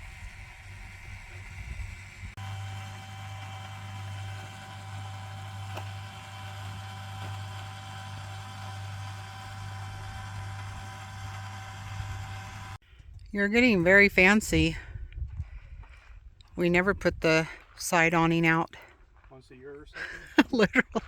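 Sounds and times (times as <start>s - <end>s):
awning motor hum: 0.0s - 12.8s.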